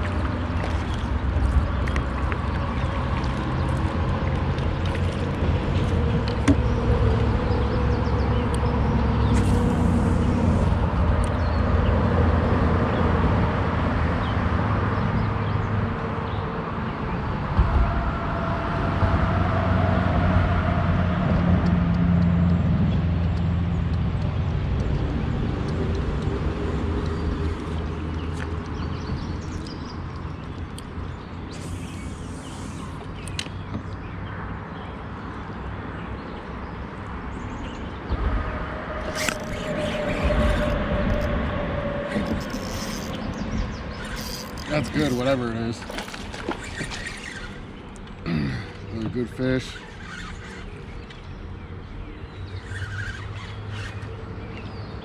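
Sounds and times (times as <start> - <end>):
engine running: 0.0 - 13.9.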